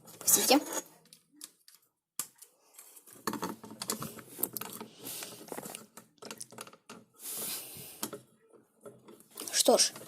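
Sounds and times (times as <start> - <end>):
plastic parts clicking and rattling: 0.0 - 7.2.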